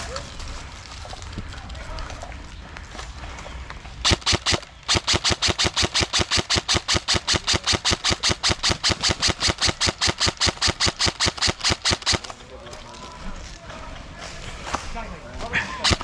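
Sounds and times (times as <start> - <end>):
airsoft gun firing: 4.0 - 12.4, 15.8 - 16.0.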